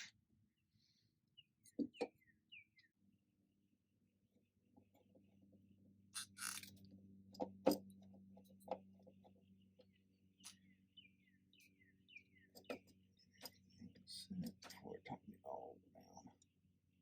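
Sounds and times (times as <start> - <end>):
steady low hum: 4.0 - 17.0.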